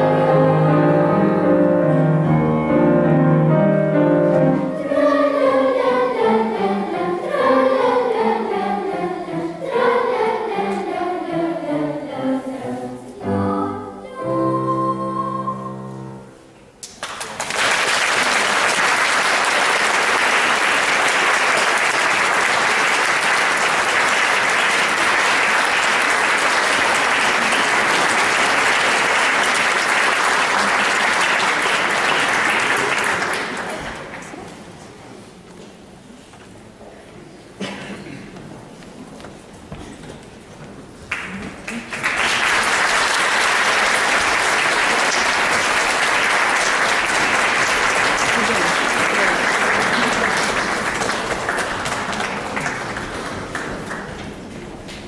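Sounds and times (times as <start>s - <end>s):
children's choir singing: 0.0s - 2.8s, 4.0s - 16.7s, 19.5s - 34.8s, 42.2s - 54.0s
piano: 0.0s - 17.4s
audience applause: 16.8s - 34.5s, 41.1s - 54.5s.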